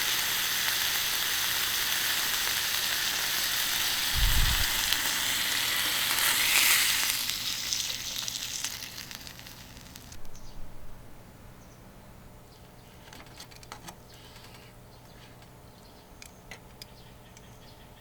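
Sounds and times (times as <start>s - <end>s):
steak sizzling on griddle: 0.0s - 10.2s.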